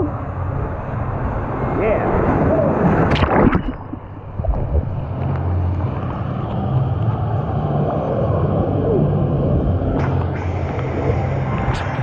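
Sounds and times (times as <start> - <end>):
rushing water: 0.0 - 5.9
wind noise: 0.0 - 12.0
loud splashing: 2.1 - 5.0.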